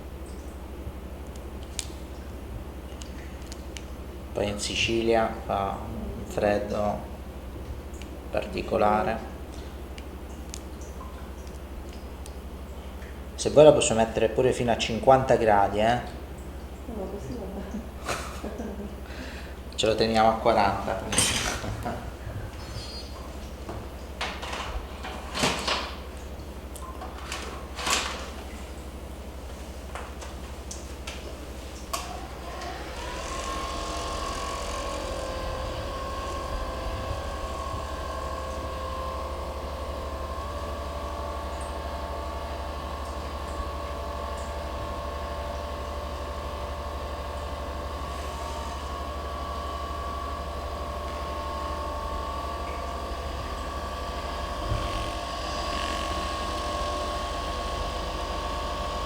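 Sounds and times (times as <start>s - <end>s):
low hum: 0.0s - 59.0s
small electric motor whining: 32.0s - 59.0s.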